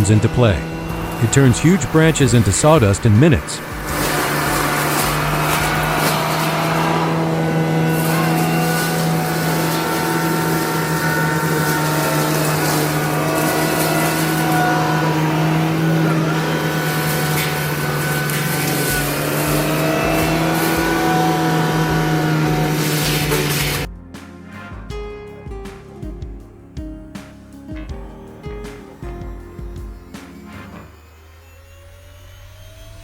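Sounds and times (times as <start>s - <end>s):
branches being shredded grinding: 0.0s - 24.8s
track loader engine humming: 0.0s - 33.0s
whining tones: 0.0s - 33.0s.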